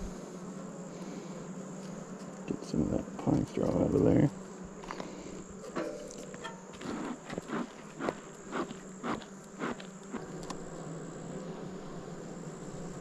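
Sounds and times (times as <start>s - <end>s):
honeybees buzzing: 0.0s - 13.0s
scraping knocks on hive: 1.9s - 10.7s.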